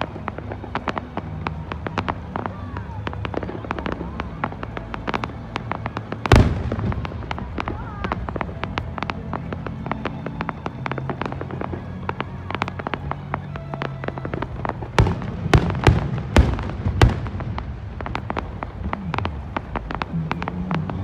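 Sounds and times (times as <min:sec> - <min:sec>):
fireworks crackling and popping: 0:00.0 - 0:21.0
firework shells booming: 0:14.7 - 0:21.0.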